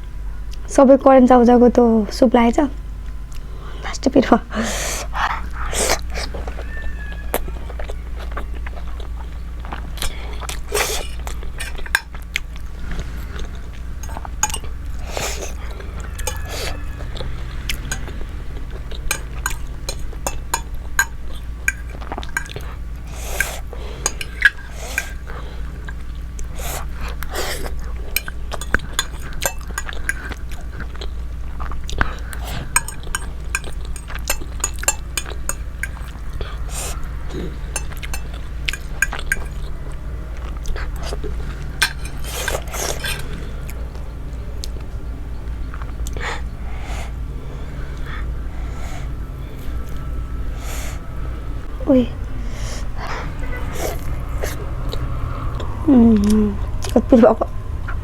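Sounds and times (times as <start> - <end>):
steady low hum: 0.0 - 58.0
slurping and chewing noodles: 4.6 - 45.0
utensil clinking against bowl: 10.4 - 12.2, 14.0 - 26.0, 27.1 - 31.1, 32.0 - 39.9, 41.0 - 43.4.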